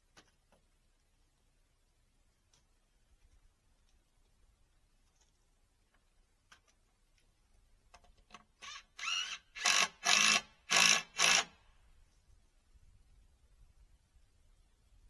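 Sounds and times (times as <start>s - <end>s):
small electric motor whirring: 8.6s - 11.6s.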